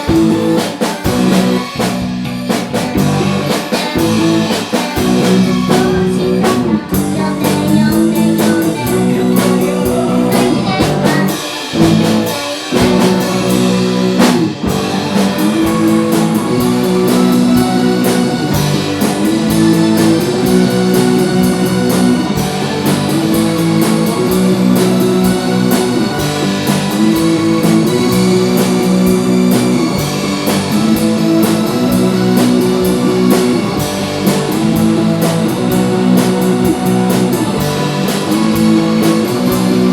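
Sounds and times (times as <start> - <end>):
drum kit: 0.0 - 39.9
guitar chords: 0.0 - 39.9.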